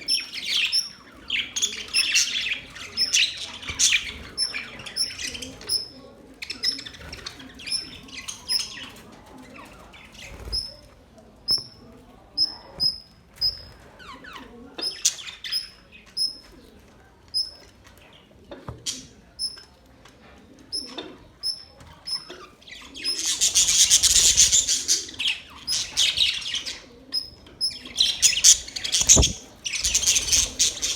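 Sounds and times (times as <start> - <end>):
scratchy bird chattering: 0.0 - 10.8, 12.4 - 16.7, 20.7 - 30.9
birds chirping: 0.0 - 30.9.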